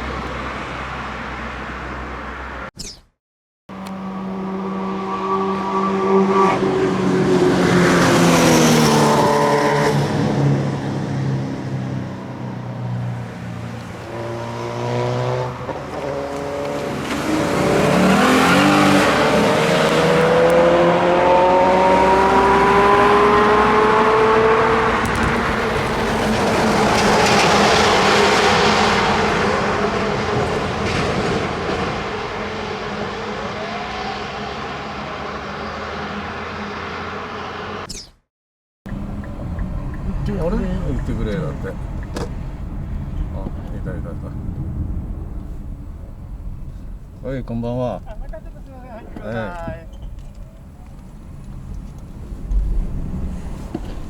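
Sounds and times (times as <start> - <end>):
car engine accelerating hard: 3.7 - 37.9
car passing by: 3.9 - 37.9.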